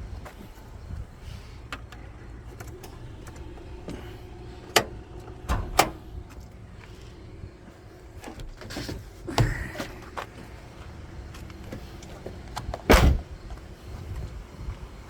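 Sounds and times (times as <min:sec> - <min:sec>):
low steady hum: 0:00.0 - 0:15.0
heavy clunks: 0:12.6 - 0:13.5.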